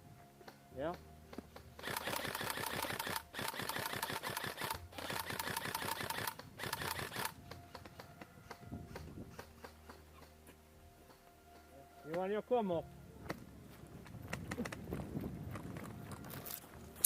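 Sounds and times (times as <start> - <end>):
airsoft rifle firing bursts: 1.8 - 7.4.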